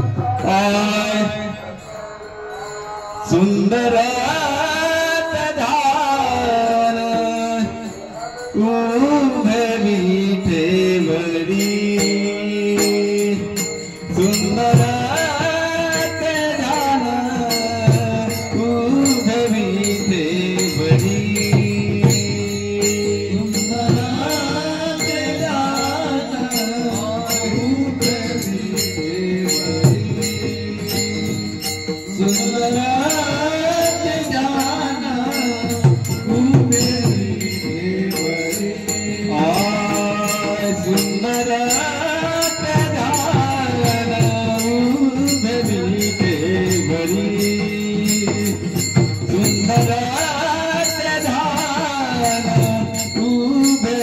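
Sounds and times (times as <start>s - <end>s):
jingling hand cymbals: 0.0s - 54.0s
man singing melodic phrases: 32.0s - 54.0s.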